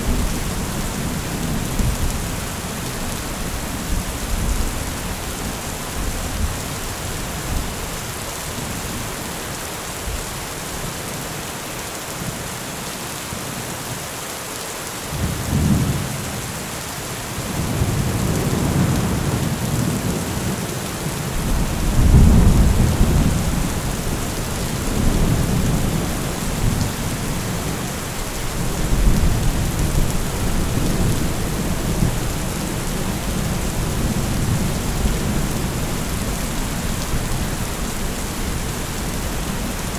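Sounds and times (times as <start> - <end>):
heavy rain: 0.0 - 39.9
thunder rolling: 21.4 - 27.5.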